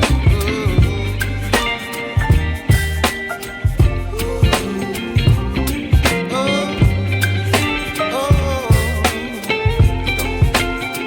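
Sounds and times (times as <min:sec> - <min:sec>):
pop song drum beat with guitar: 0:00.0 - 0:11.0.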